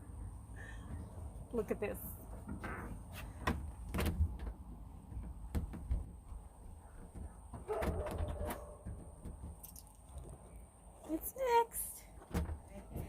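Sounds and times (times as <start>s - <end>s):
door creaking: 2.4s - 4.6s.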